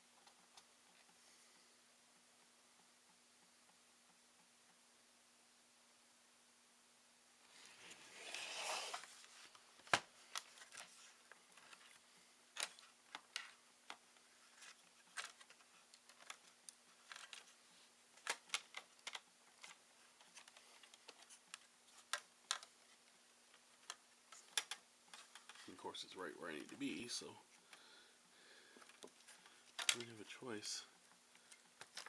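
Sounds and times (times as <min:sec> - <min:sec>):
faint steady hum: 0:00.0 - 0:32.0
plastic and metal parts clicking: 0:12.6 - 0:17.6, 0:18.2 - 0:25.7, 0:28.8 - 0:30.2, 0:31.4 - 0:32.0.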